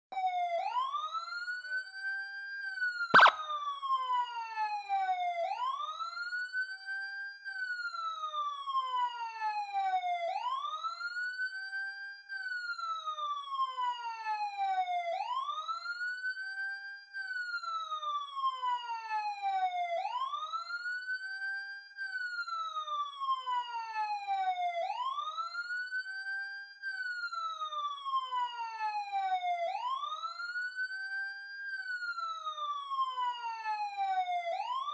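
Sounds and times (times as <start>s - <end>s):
sharp click: 3.2s - 3.4s
police siren wailing: 3.2s - 6.0s, 22.5s - 26.1s, 26.9s - 34.9s.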